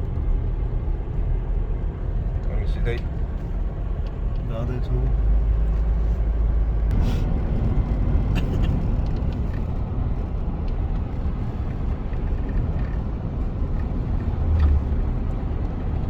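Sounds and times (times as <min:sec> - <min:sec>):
road and engine rumble: 0:00.0 - 0:16.0.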